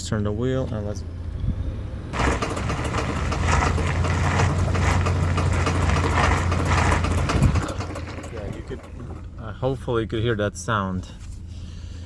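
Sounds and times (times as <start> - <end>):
pickup engine under load: 1.6 - 9.9
drivetrain clicking and knocking: 2.2 - 9.5.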